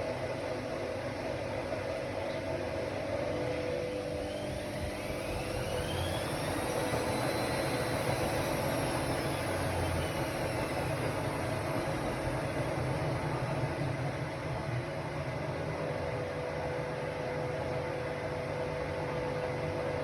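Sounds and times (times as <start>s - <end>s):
washer-dryer motor whirring: 0.0s - 20.0s.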